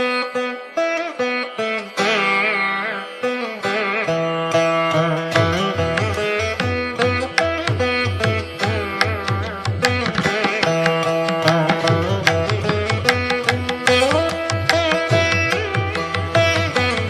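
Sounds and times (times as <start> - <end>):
plucked string melody: 0.0 - 17.0
tabla-like drum rhythm: 4.4 - 17.0.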